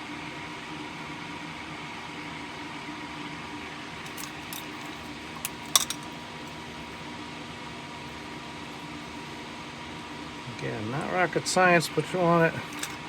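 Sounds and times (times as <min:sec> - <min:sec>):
fan humming: 0:00.0 - 0:13.0
metal tools clicking: 0:04.0 - 0:06.2, 0:12.6 - 0:13.0.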